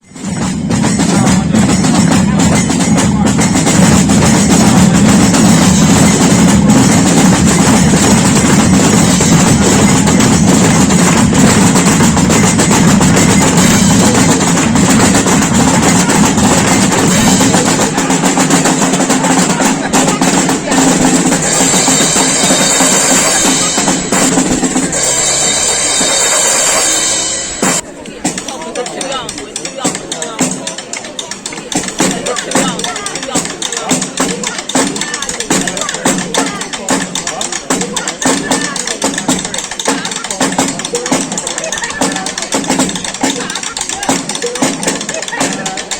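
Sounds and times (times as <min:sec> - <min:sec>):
bass and snare drumming: 0:00.0 - 0:45.9
high steady tones: 0:01.4 - 0:27.8.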